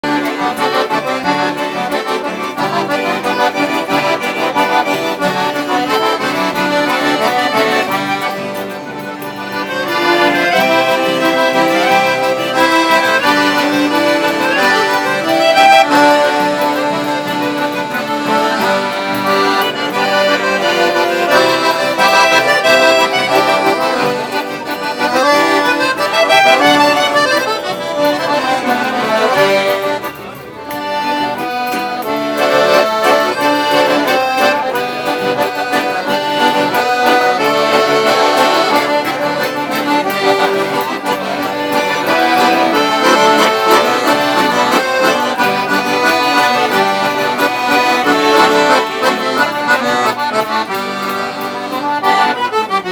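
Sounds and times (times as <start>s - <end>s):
accordions playing folk tune: 0.0s - 52.9s.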